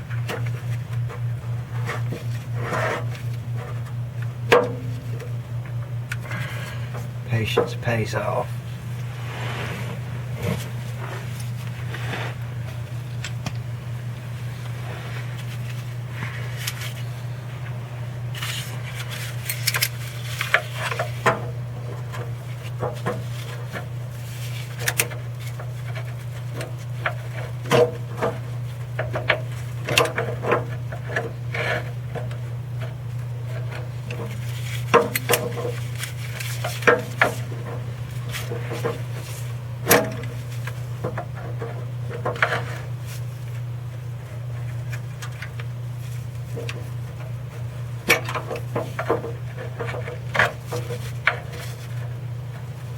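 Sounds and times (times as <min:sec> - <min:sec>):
steady low hum: 0:00.0 - 0:52.9
metal clicks and scraping: 0:18.3 - 0:23.8.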